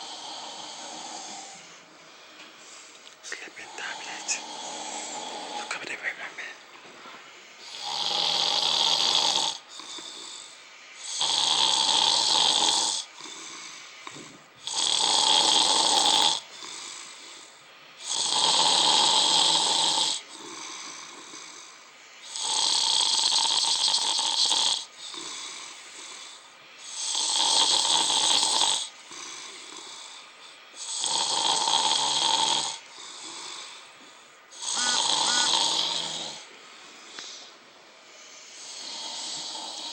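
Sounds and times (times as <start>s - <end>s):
man snoring loudly: 7.7s - 10.3s, 11.0s - 13.6s, 14.6s - 16.9s, 18.0s - 21.2s, 22.3s - 25.6s, 27.0s - 28.9s, 30.8s - 32.8s, 34.6s - 36.4s.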